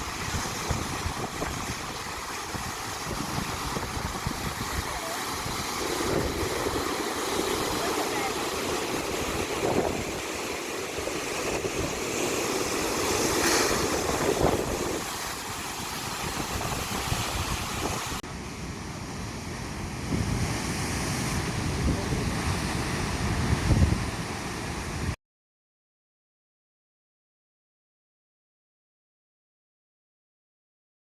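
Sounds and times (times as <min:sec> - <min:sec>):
wind buffeting microphone: 0:00.0 - 0:10.4, 0:12.9 - 0:18.2, 0:19.7 - 0:25.2
ocean waves breaking: 0:00.0 - 0:25.2.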